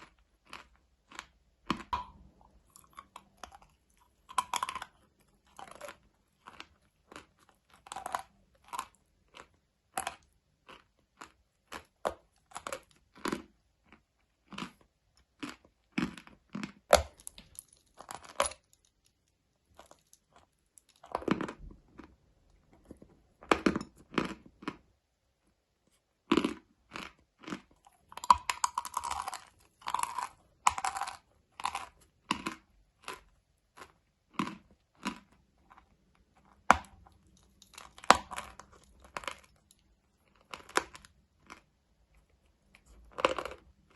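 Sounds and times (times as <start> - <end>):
crisp chewing crunches: 0.0 - 24.9, 26.2 - 43.9.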